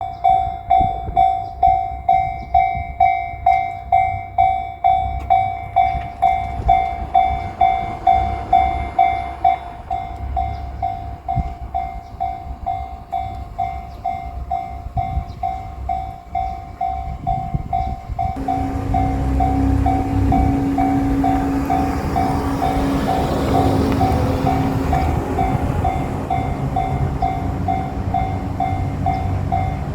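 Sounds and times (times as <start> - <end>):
diesel railcar rumble: 0.0 - 29.9
low engine note: 4.8 - 14.2, 18.2 - 29.9
level crossing bell ringing: 16.0 - 24.7.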